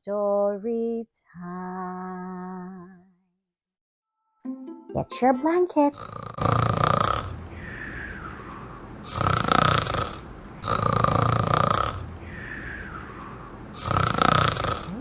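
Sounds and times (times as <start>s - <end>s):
loud rasping snores: 6.0s - 15.0s
soft whistle on breath: 7.6s - 8.8s, 12.2s - 13.5s.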